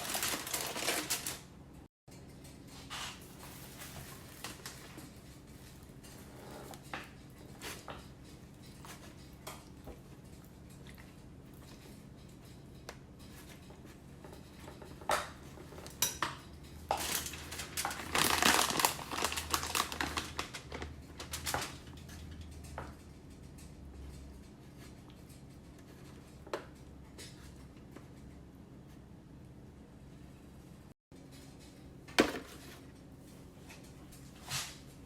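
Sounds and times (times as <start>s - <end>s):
dishes and cutlery clattering: 11.6s - 19.9s.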